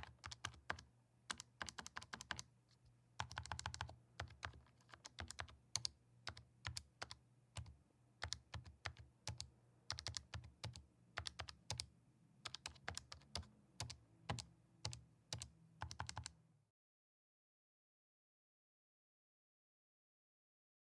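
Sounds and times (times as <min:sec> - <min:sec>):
calculator buttons clicking: 0:00.0 - 0:02.4, 0:03.2 - 0:11.8, 0:12.5 - 0:16.3.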